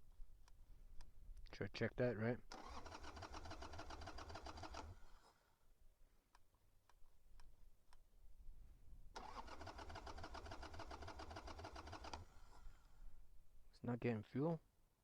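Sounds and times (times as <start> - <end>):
motorcycle starter cranking: 2.5 - 5.3, 9.2 - 12.8.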